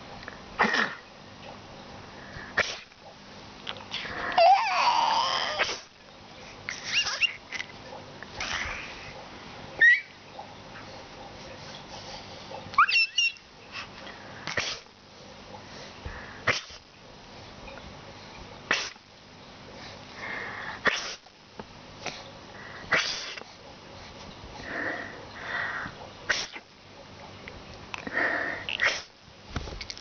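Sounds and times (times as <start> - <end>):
person sneezing: 0.6 - 1.0, 5.5 - 5.9, 14.5 - 14.8, 16.4 - 16.8, 18.7 - 19.0, 20.8 - 21.2, 22.9 - 23.4, 26.3 - 26.6, 28.7 - 29.1
baby squealing with laughter: 4.4 - 5.8, 6.7 - 7.4, 9.8 - 10.2, 12.8 - 13.4.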